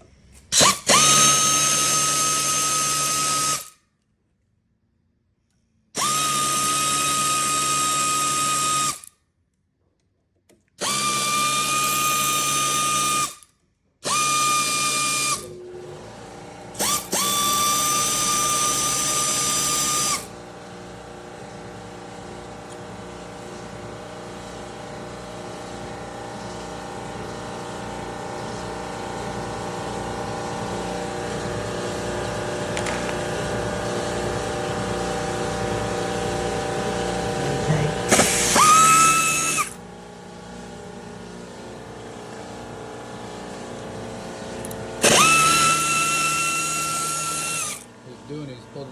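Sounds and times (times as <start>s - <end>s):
power drill whining: 0.0s - 3.8s, 6.0s - 9.1s, 10.8s - 48.9s
steady machine hum: 20.3s - 48.9s.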